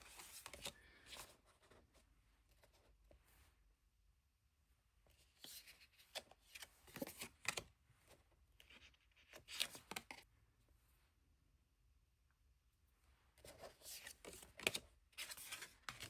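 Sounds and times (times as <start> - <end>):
paper rustling and sliding: 13.4 - 16.0.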